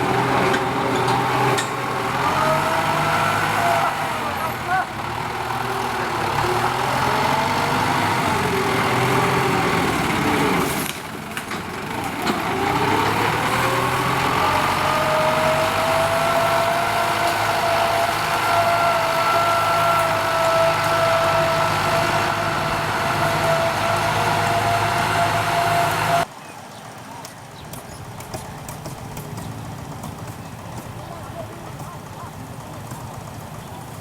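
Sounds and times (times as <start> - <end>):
tractor diesel engine under load: 0.0 - 34.0.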